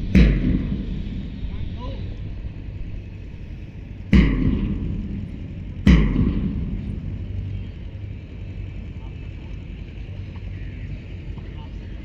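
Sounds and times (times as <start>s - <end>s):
loud bangs: 0.0s - 8.8s
steady low hum: 0.0s - 12.0s.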